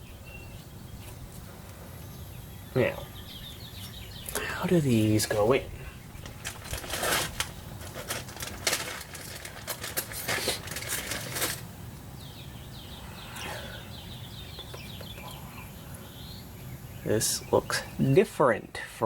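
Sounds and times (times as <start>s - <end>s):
bird chirping: 0.0s - 19.0s
clicks and rustling of handling parts: 6.2s - 11.6s.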